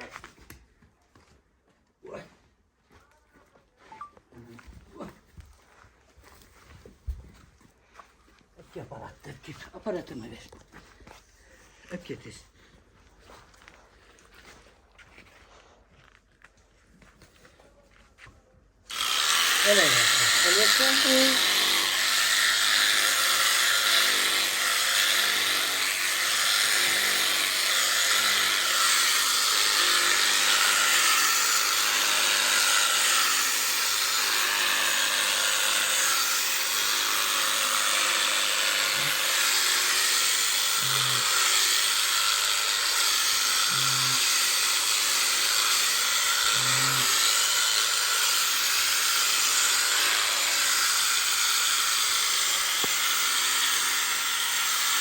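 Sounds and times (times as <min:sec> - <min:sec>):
electric clippers buzzing: 0:18.9 - 0:55.0.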